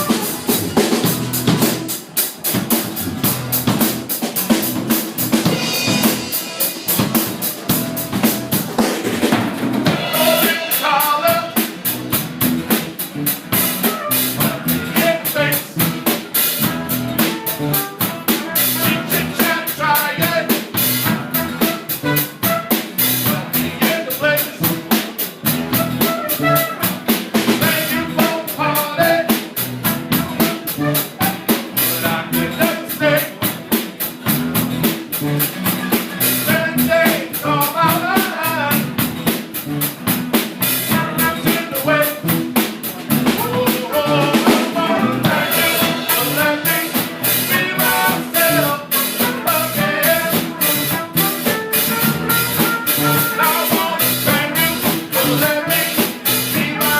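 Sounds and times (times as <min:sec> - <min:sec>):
drum kit hits: 0:00.0 - 0:56.9
live band playing: 0:00.0 - 0:56.9.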